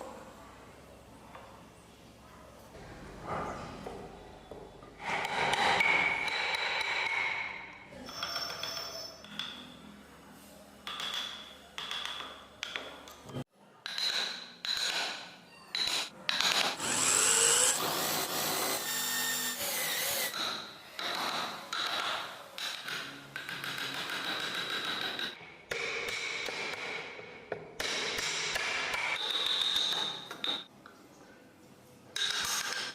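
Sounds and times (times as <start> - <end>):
small power tool whining: 16.8 - 20.3.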